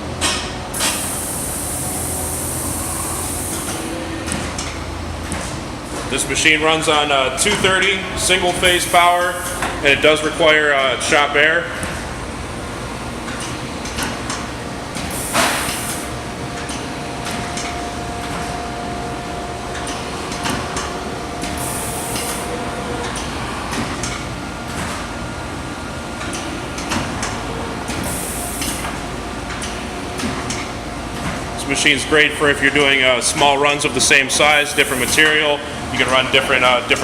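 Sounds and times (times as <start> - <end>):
binding machine running: 0.0 - 11.2, 11.8 - 37.0
pneumatic air hiss: 0.7 - 3.9, 15.1 - 16.1, 21.6 - 22.5, 28.0 - 28.9, 34.5 - 35.4
mechanical clicks and clacks: 23.0 - 25.0.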